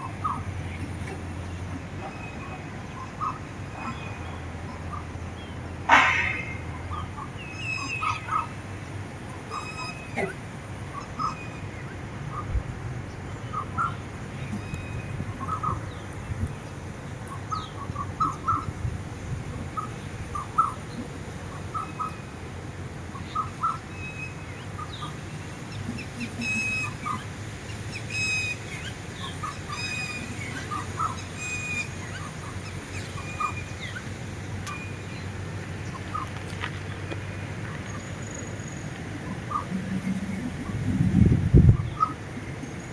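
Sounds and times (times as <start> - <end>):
small birds chirping: 0.0 - 42.9
wind rumble on microphone: 10.8 - 23.2, 39.0 - 42.9.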